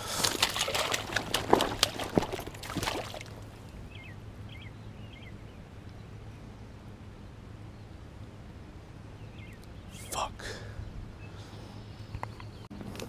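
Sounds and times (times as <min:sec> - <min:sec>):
splashing in shallow water: 0:00.0 - 0:03.8
bird chirps: 0:03.7 - 0:06.1.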